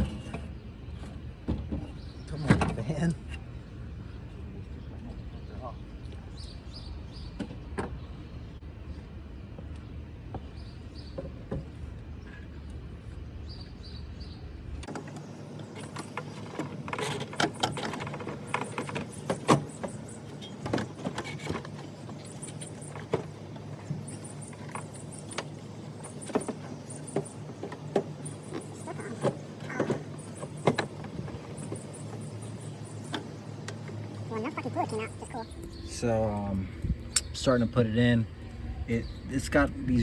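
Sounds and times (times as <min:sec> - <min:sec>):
clunks and scraping in engine bay: 0:00.0 - 0:03.4, 0:14.8 - 0:35.4
steady low hum: 0:11.8 - 0:40.0.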